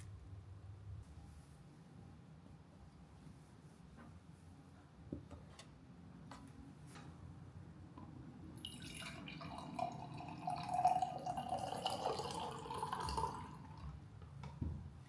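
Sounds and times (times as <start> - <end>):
tap water running into sink: 8.6 - 14.0.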